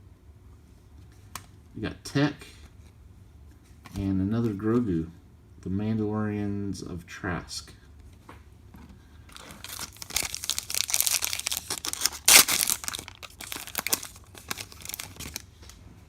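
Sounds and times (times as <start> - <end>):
wrapper tearing and crinkling: 9.3 - 15.4.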